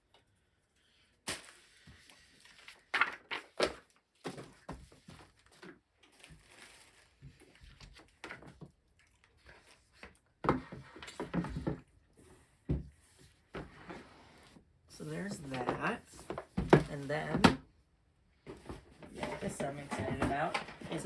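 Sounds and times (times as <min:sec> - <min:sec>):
cardboard boxes rustling: 0:18.4 - 0:21.0.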